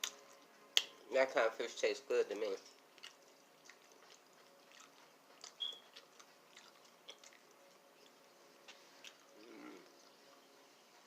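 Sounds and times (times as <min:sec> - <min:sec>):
person chewing: 0:02.6 - 0:10.2.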